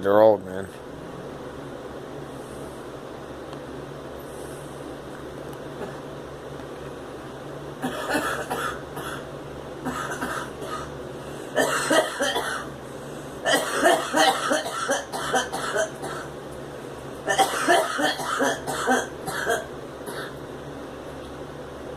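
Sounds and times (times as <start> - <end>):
girl coughing: 7.8 - 9.2, 9.8 - 10.9, 11.6 - 12.7, 13.4 - 16.3, 17.3 - 20.4.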